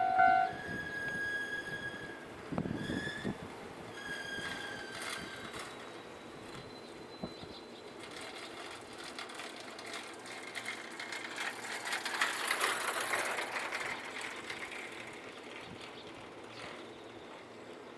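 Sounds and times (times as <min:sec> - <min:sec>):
passing vehicle clattering: 0:07.3 - 0:17.8.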